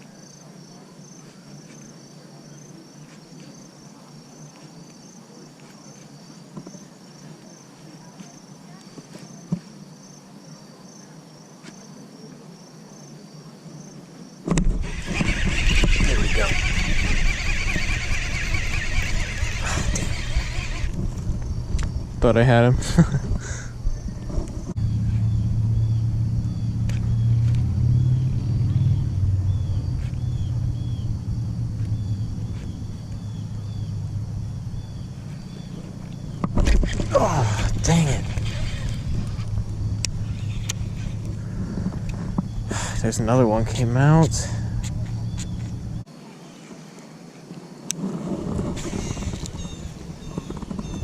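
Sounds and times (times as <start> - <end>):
insects chirping: 0.0 - 51.0
low rumble: 23.7 - 36.4.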